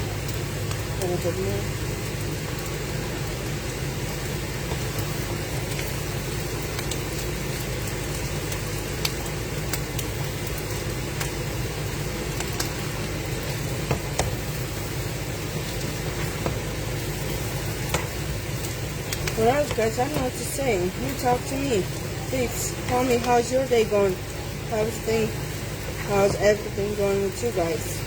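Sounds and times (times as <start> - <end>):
food sizzling in frying pan: 0.0 - 28.0
low steady hum: 0.0 - 28.0
small pops and clicks: 12.4 - 12.9, 17.9 - 20.3.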